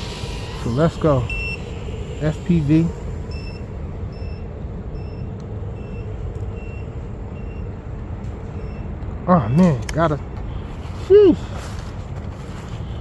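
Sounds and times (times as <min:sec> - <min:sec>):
steady rushing noise: 0:00.0 - 0:08.6
short high electronic beeps: 0:00.7 - 0:01.8.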